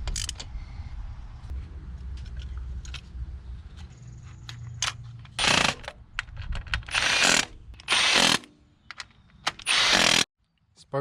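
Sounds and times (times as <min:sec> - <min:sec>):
loud rasping bursts: 0:05.4 - 0:05.9, 0:06.9 - 0:08.5, 0:09.6 - 0:10.3.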